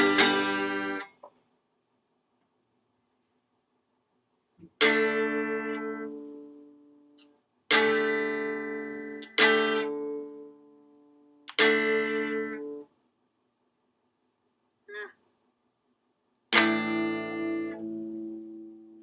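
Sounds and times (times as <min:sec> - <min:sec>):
guitar chords strummed: 0:00.0 - 0:01.2, 0:04.7 - 0:07.0, 0:07.7 - 0:10.9, 0:11.5 - 0:12.8, 0:16.6 - 0:19.0.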